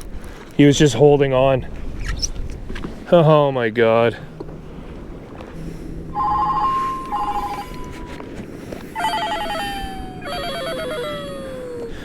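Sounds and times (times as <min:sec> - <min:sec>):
descending warbling electronic tone: 0:06.2 - 0:08.2, 0:09.0 - 0:10.4.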